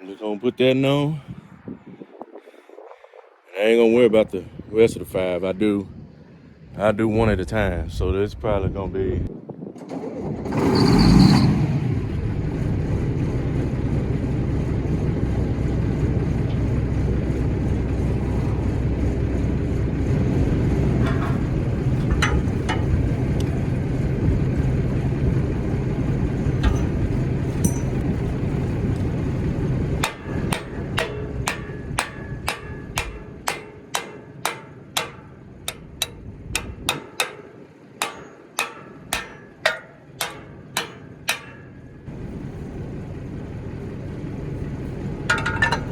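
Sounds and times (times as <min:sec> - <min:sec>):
steady machine running: 0:12.4 - 0:45.9
hammer striking metal: 0:20.9 - 0:23.1, 0:26.6 - 0:28.1, 0:30.0 - 0:42.1, 0:45.3 - 0:45.9.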